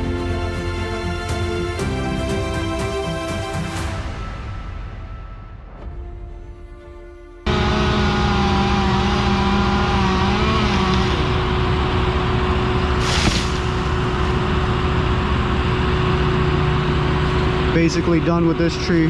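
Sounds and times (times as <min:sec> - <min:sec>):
second wavering engine note: 0:00.0 - 0:19.0
heavy engine running: 0:07.4 - 0:19.0.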